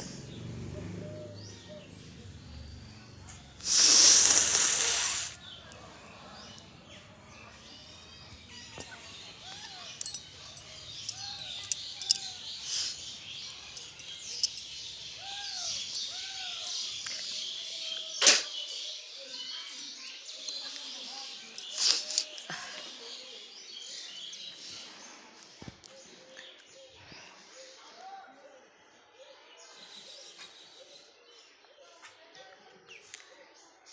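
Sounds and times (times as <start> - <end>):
person blowing nose: 3.6 - 5.4
faint bird chirps: 7.8 - 24.9.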